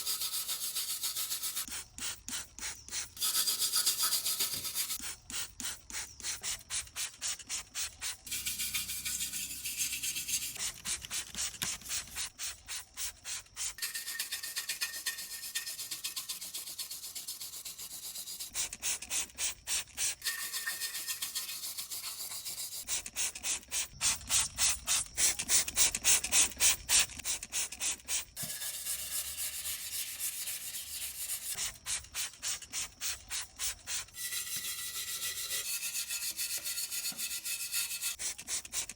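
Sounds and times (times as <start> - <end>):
scrubbing rusted metal: 8.3 - 12.2.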